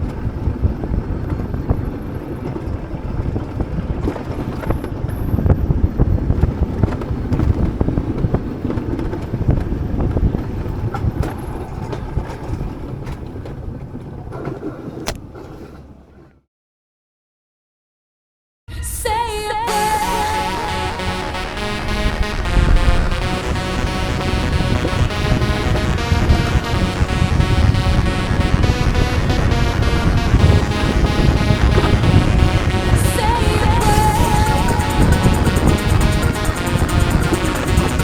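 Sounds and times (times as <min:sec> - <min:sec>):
coaster wheels rumbling on rail: 0:00.0 - 0:16.2.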